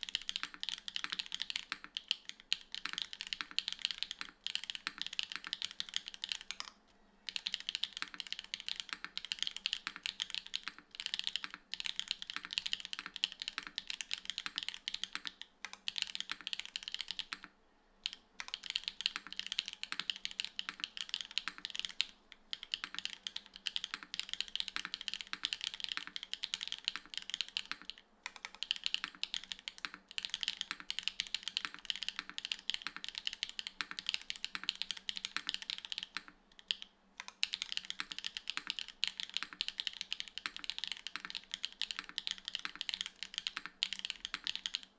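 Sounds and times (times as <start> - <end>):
mechanical keyboard typing: 0.0 - 44.9.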